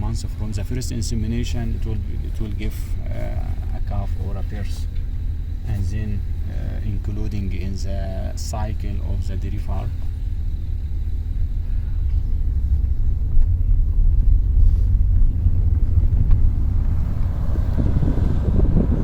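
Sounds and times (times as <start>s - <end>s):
wind buffeting microphone: 10.4s - 19.0s.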